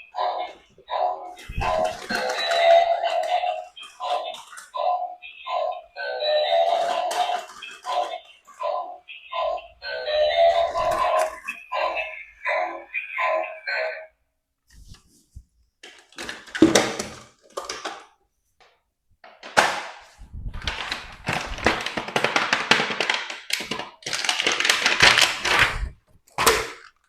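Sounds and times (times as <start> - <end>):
packaging rustling and crinkling: 1.3 - 4.8, 6.5 - 8.3, 20.4 - 27.0.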